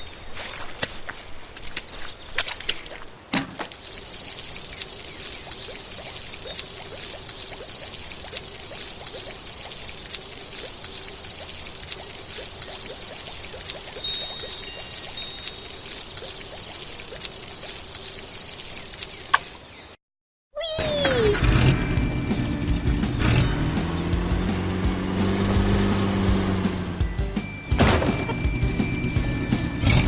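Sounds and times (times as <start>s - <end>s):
water pouring and trickling: 1.6s - 20.0s.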